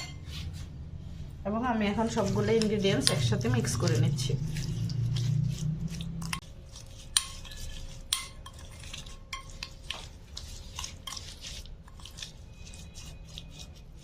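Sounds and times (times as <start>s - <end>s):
spoon clinking against bowl: 0.0s - 0.2s, 7.0s - 10.1s
spoon stirring paste in bowl: 1.8s - 14.0s.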